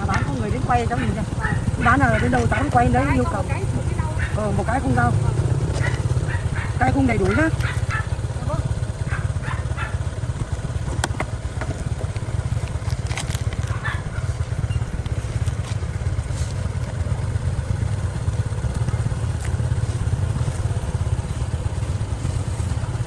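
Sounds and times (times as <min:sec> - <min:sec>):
motorbike traffic rumble: 0:00.0 - 0:23.0
light clicks and clatters: 0:10.4 - 0:23.0.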